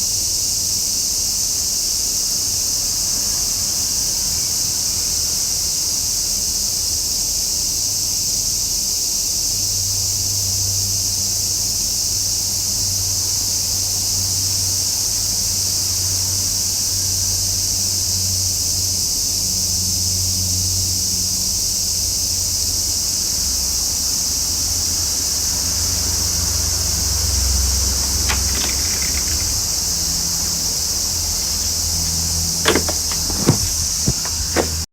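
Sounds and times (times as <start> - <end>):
cicadas buzzing: 0.0 - 34.9.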